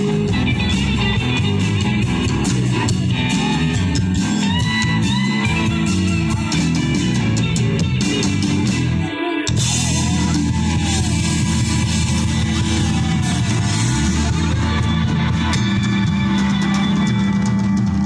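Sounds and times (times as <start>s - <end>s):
bass and drums: 0.0s - 18.0s
electric guitar: 0.0s - 18.0s.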